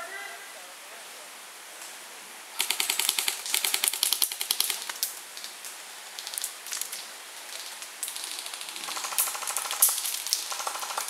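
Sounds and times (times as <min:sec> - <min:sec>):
airsoft guns firing bursts: 0:02.6 - 0:04.9, 0:08.1 - 0:11.0.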